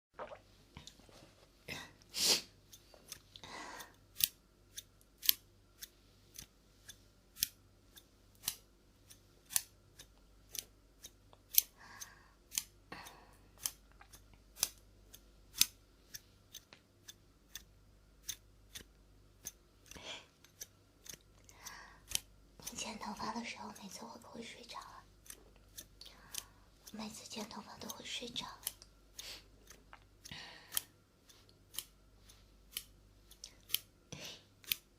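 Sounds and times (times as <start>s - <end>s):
soft rustles: 1.0s - 1.6s
scissors snipping: 3.8s - 11.8s, 12.5s - 24.5s, 25.2s - 33.9s, 34.6s - 34.9s.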